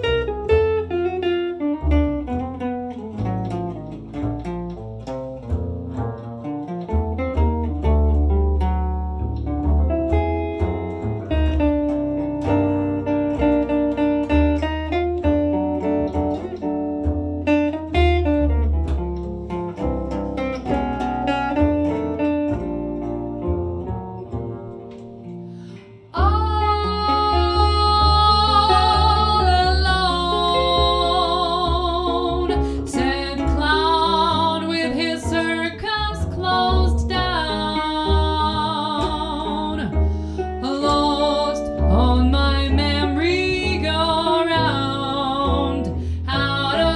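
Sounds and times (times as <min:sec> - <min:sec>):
bass line: 0:00.0 - 0:46.9
jazz guitar solo: 0:00.0 - 0:46.9
woman singing wordless notes: 0:26.1 - 0:40.0, 0:40.6 - 0:46.9.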